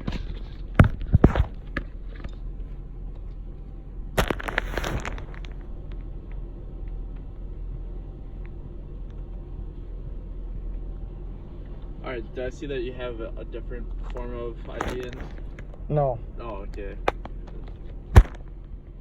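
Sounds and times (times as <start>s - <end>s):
car low hum: 0.0s - 19.0s
rustling of handled objects: 4.2s - 5.8s
sharp knocks: 18.1s - 18.6s.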